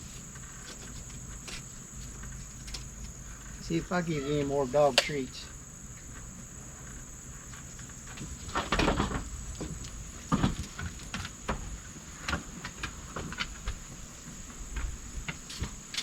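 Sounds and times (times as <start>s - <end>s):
insects droning: 0.0s - 16.0s
knocks and thumps: 8.1s - 12.5s.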